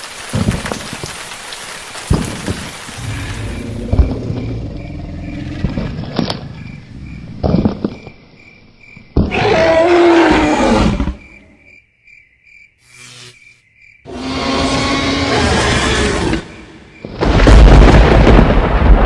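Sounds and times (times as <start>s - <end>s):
dinosaur roar: 3.0s - 7.7s, 9.2s - 11.3s, 14.1s - 16.7s.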